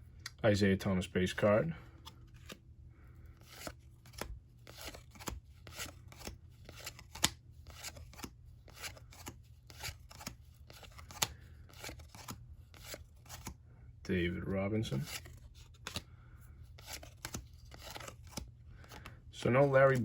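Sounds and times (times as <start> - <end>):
trading cards sliding and snapping: 2.0 - 2.6, 3.4 - 13.6, 15.0 - 16.1, 16.7 - 20.0.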